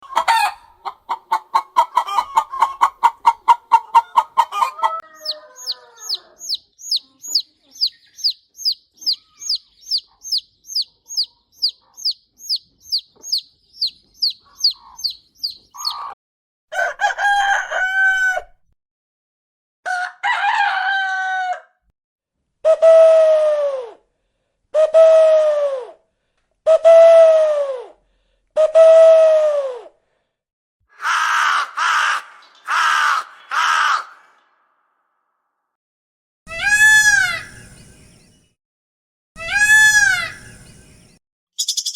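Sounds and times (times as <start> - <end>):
drawn-out bird calls: 3.7 - 16.2
short high bird chirps: 5.2 - 16.1, 40.4 - 41.9.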